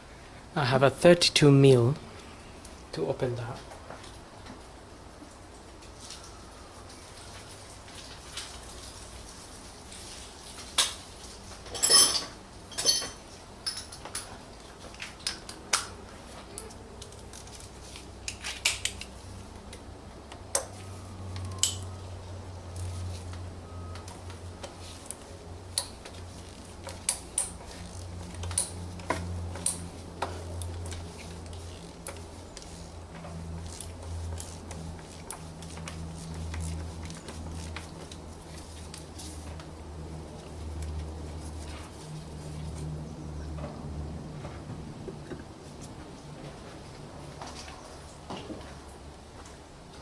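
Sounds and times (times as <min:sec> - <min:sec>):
metal hand tools clinking: 0:11.7 - 0:14.0.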